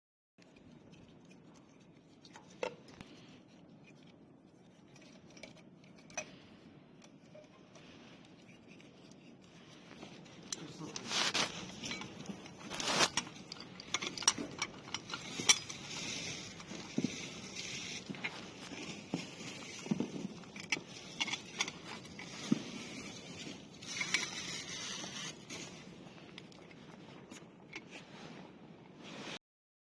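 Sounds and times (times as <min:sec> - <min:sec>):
rustling scraping noise: 0:00.4 - 0:29.4.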